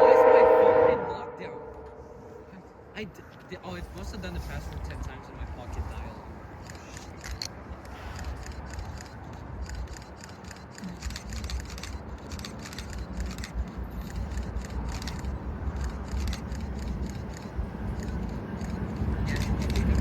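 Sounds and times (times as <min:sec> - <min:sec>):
steady low rumble: 0:00.0 - 0:20.0
handling clicks and rubbing: 0:05.7 - 0:20.0.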